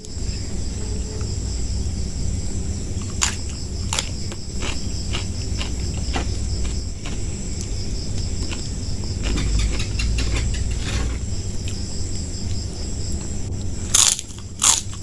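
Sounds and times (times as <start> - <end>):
insects chirring: 0.0 - 15.0
chewing food: 3.0 - 11.8, 13.9 - 15.0
crunchy bite: 3.0 - 11.8, 13.9 - 15.0.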